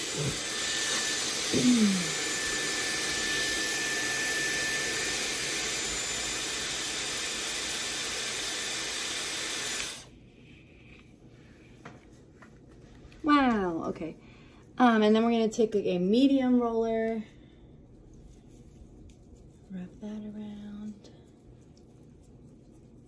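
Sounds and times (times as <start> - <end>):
hair styler blowing air: 0.0 - 10.2.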